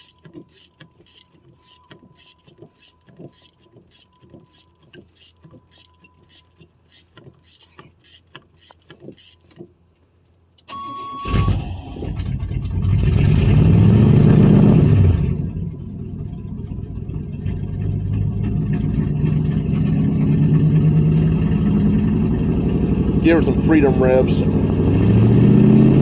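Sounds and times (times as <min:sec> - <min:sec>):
car engine starting and revving: 0:10.7 - 0:26.0.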